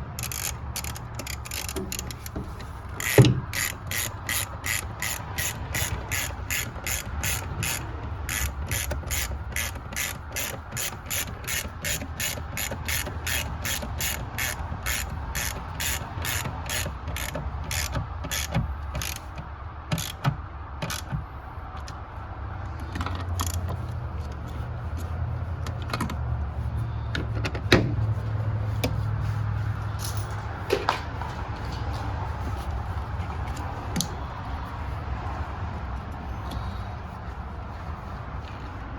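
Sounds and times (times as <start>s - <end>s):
ratchet wrench clicking: 0.0s - 21.2s, 22.9s - 24.4s.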